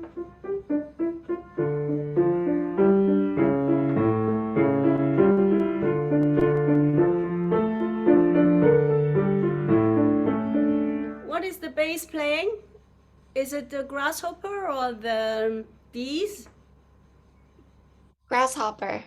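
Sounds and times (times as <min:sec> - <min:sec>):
piano bass line and chords: 0:00.0 - 0:11.3.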